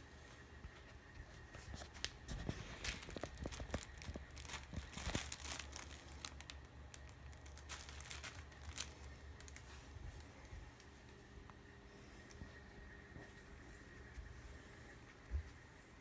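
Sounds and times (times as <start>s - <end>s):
kitten scrambling in crinkly tunnel: 2.3s - 10.0s.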